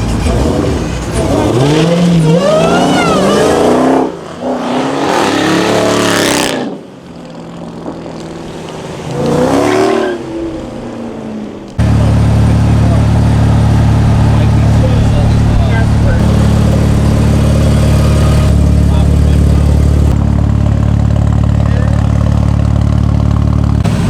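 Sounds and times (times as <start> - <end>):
cars accelerating hard: 0.0 - 6.8, 7.8 - 24.0.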